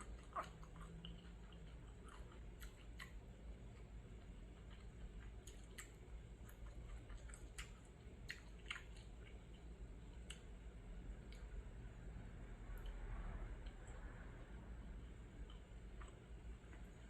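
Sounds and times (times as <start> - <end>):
person chewing food: 0.0 - 11.7, 15.1 - 17.0.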